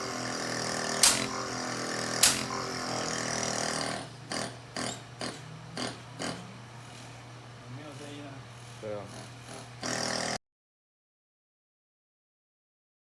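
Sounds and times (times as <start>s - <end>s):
sharp clicks: 1.0s - 1.4s, 2.2s - 2.6s
short knocks: 1.0s - 1.4s, 2.2s - 2.6s.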